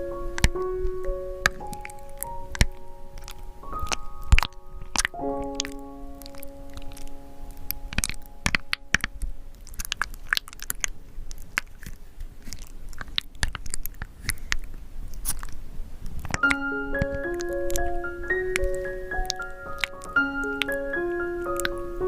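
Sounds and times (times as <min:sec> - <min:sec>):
music notes: 0:00.0 - 0:09.5, 0:16.4 - 0:22.0
paint stirring clicks and crackles: 0:00.3 - 0:21.8.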